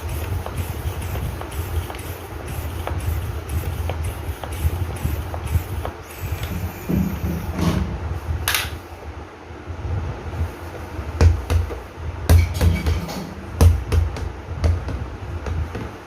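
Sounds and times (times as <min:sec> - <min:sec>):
hand air pump strokes: 0:00.0 - 0:07.5
air hissing: 0:00.0 - 0:08.9.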